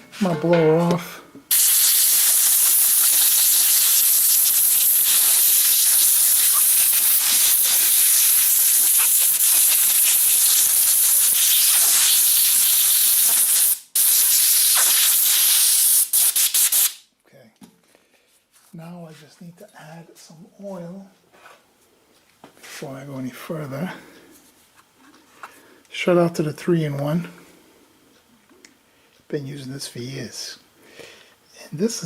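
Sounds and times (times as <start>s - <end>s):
compressed air hissing: 1.5s - 17.0s.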